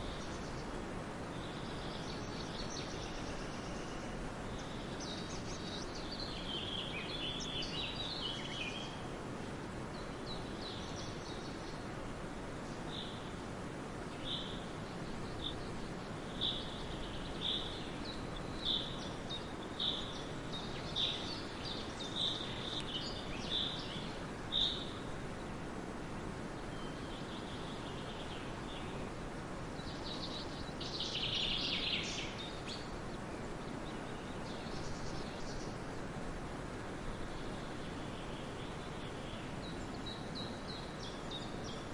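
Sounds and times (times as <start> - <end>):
steady background noise: 0.0 - 41.9
bird chirping: 14.2 - 25.0, 29.8 - 33.0.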